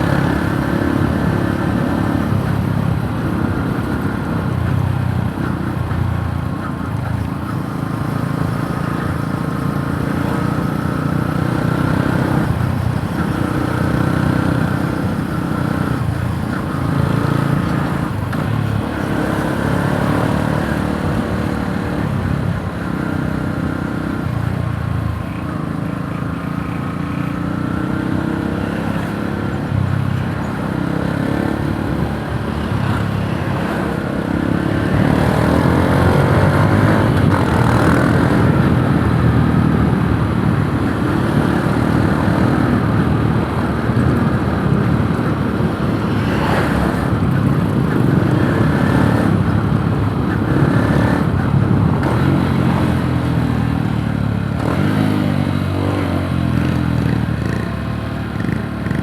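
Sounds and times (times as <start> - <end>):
motorcycle engine revving: 25.6 - 59.0.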